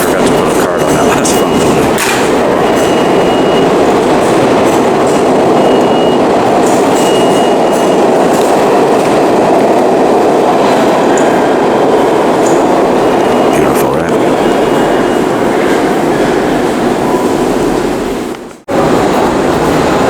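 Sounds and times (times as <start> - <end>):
subway train rumble: 0.0 - 20.0
high wheel squeals: 1.1 - 4.0, 5.5 - 8.2.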